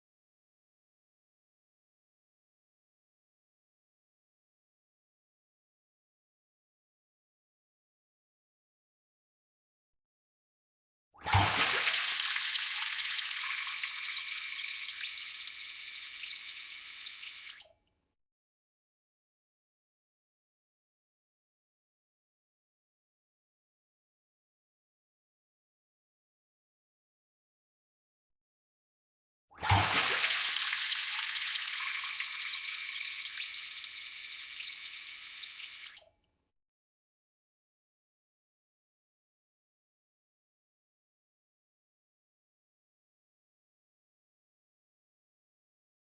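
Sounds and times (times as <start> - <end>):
water running and splashing: 29.6 - 35.9.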